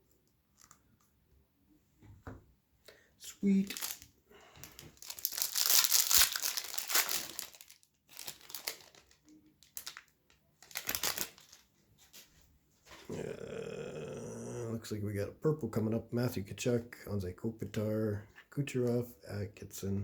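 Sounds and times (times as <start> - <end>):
wrapper being torn and crinkled: 3.6 - 11.7.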